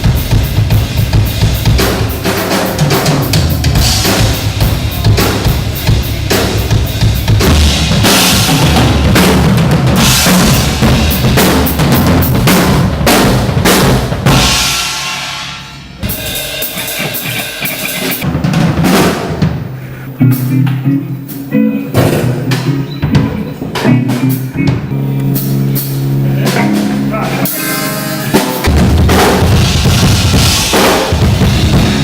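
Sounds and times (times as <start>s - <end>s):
bass drum: 0.0s - 15.0s
cymbal wash: 10.0s - 18.2s
snare drum: 16.1s - 19.2s.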